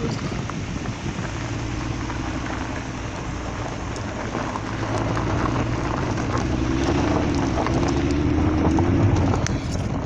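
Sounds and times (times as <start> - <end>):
car engine hum: 0.0 - 10.0
tyre noise: 0.0 - 10.0.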